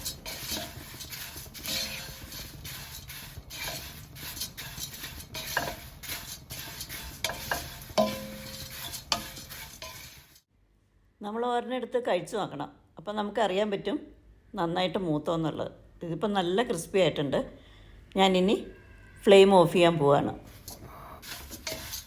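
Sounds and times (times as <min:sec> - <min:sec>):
spatula scraping rice flakes in pan: 0:00.0 - 0:10.5, 0:20.4 - 0:22.0.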